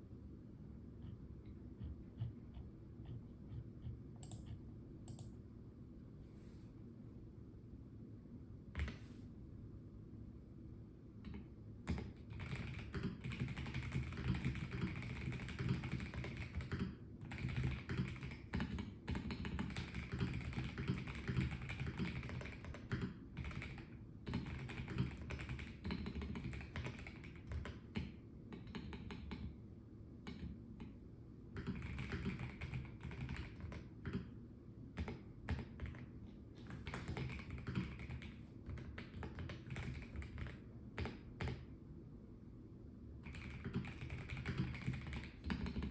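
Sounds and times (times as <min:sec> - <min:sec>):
typing on mechanical keyboard: 0:11.2 - 0:29.6, 0:31.6 - 0:34.3, 0:35.0 - 0:41.7, 0:43.2 - 0:45.9.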